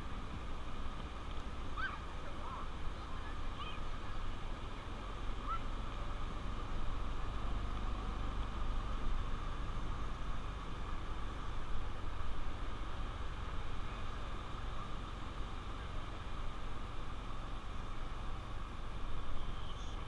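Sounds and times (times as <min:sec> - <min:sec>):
motorcycle engine running: 0:00.0 - 0:20.0
wind and road noise: 0:00.0 - 0:20.0.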